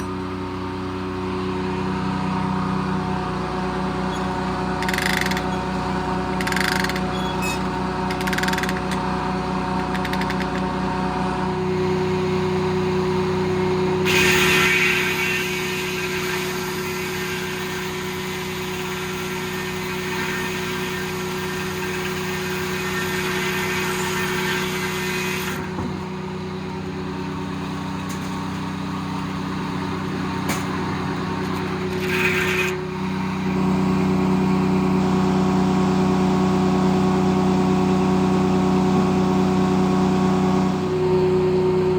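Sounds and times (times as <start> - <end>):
diesel engine running: 0.0 - 41.9
saw blade cutting log: 4.1 - 9.1, 9.8 - 10.7, 14.0 - 26.2, 30.4 - 33.6.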